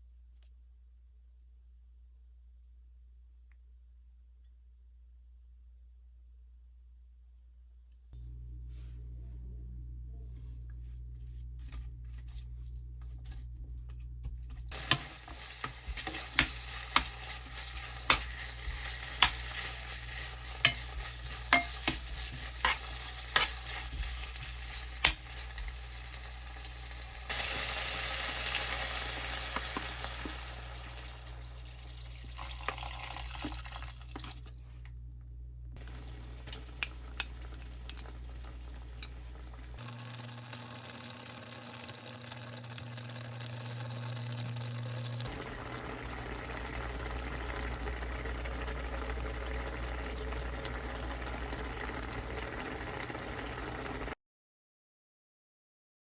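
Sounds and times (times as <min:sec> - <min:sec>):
low steady hum: 0:00.0 - 0:27.4, 0:28.5 - 0:54.2
utensil tapping against pan: 0:14.7 - 0:17.3, 0:18.0 - 0:19.6, 0:20.6 - 0:25.7, 0:36.8 - 0:38.1
food sizzling in a pan: 0:14.7 - 0:33.6, 0:35.8 - 0:54.2.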